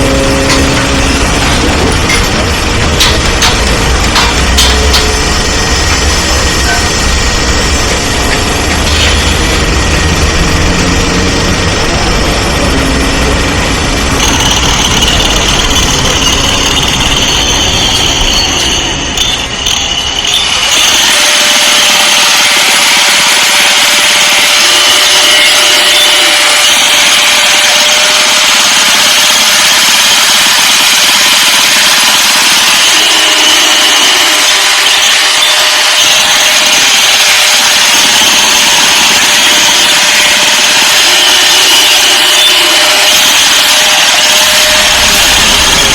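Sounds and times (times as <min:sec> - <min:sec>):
low engine sound: 0:00.0 - 0:20.7, 0:42.2 - 0:45.9
high-pitched machinery hissing: 0:00.0 - 0:45.9.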